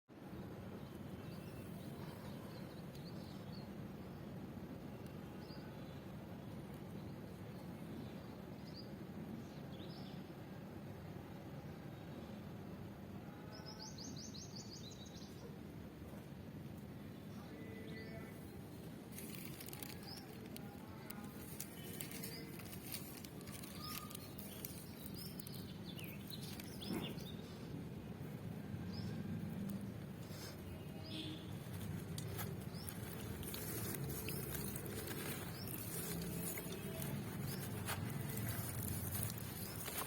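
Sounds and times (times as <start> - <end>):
charcoal crumbling and crushing: 19.0 - 27.4, 31.6 - 40.0.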